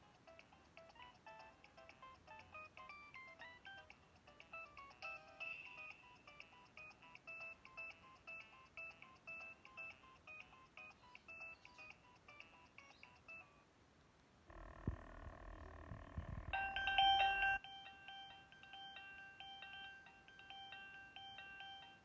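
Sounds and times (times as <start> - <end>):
mobile phone ringtone beeps: 16.4 - 22.0.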